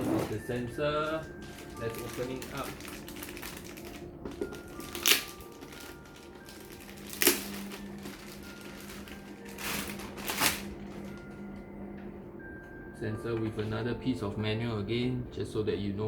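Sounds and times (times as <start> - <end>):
packaging snapping: 0.0 - 11.5
packaging rustling: 0.0 - 11.7
faint background music: 0.0 - 16.0.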